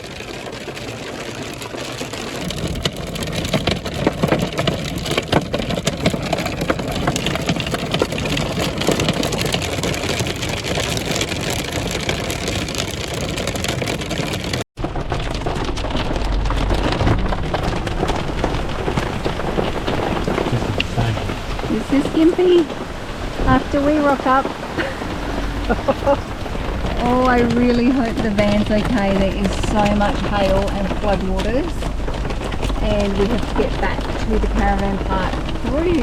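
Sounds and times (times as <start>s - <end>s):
hail and rain on car roof: 0.0s - 36.0s
low rumble: 14.8s - 36.0s.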